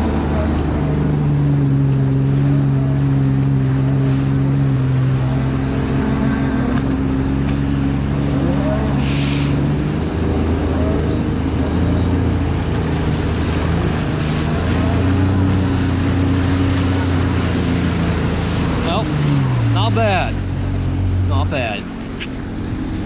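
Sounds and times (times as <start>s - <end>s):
jet ski engine running: 0.0s - 9.7s, 10.3s - 23.0s
brief hiss: 9.0s - 9.6s.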